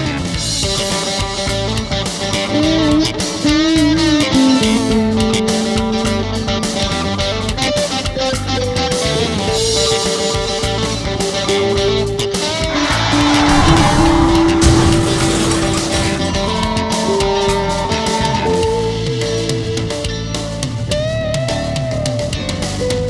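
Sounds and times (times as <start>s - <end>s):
electric guitar lead line: 0.0s - 15.1s.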